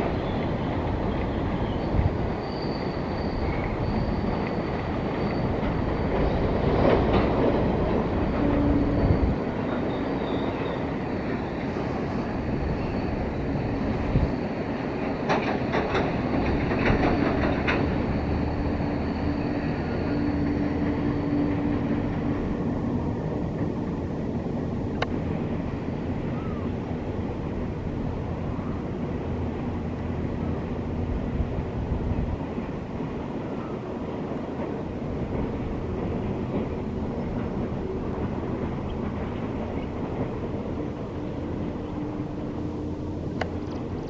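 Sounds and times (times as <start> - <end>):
freight train rumbling past: 0.0 - 44.0
wheel clatter over rail joints: 0.0 - 44.0.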